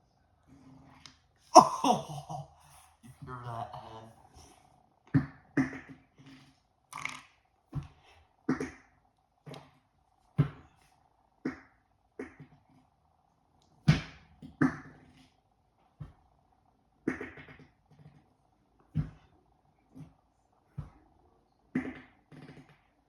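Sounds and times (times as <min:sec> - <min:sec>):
person making fart sounds: 0:01.6 - 0:02.4.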